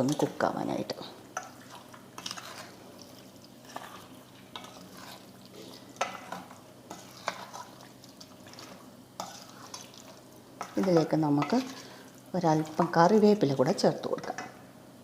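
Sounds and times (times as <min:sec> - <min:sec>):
faint steady hum: 0:00.0 - 0:15.0
spoon scraping and knocking a pan: 0:03.6 - 0:07.8.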